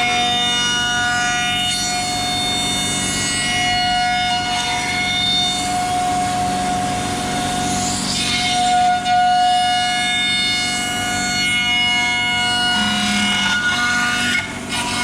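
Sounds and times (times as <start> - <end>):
router spindle whine: 0.0 - 15.0
bit cutting wood: 11.2 - 15.0.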